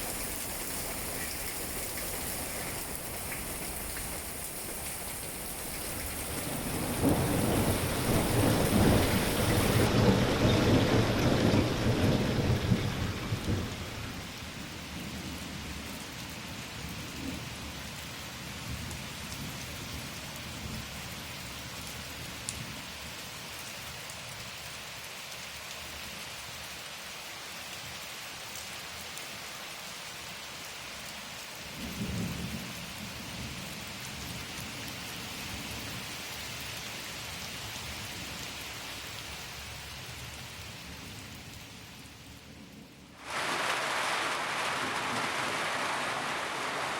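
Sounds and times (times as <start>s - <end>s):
steady rain falling: 0.0s - 46.9s
thunder rolling: 5.8s - 14.4s, 43.2s - 46.9s.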